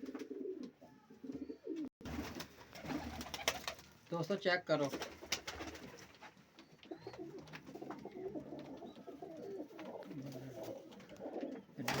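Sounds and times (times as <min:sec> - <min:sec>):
pigeons cooing: 0:00.0 - 0:01.9, 0:06.7 - 0:12.0.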